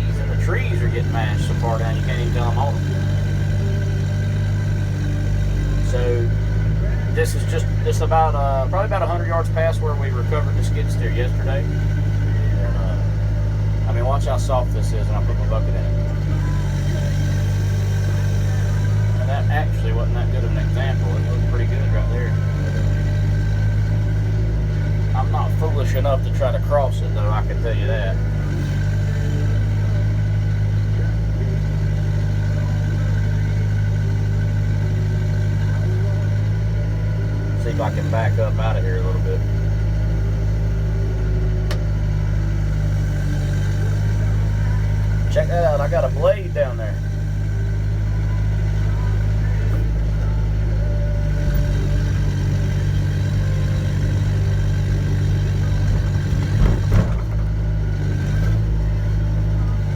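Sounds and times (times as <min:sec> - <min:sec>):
excavator diesel engine running: 0:00.0 - 0:59.9
short clunks: 0:28.1 - 0:46.3, 0:51.1 - 0:59.9.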